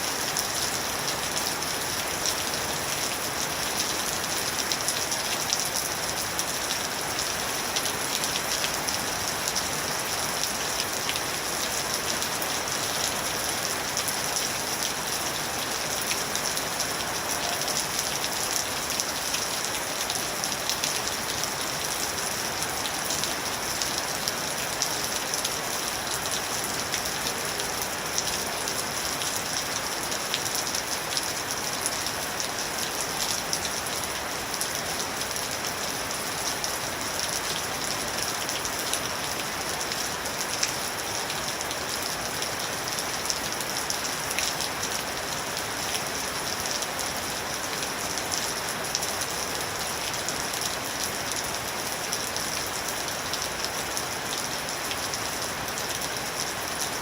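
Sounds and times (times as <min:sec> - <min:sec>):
steady rain pattering: 0:00.0 - 0:57.0.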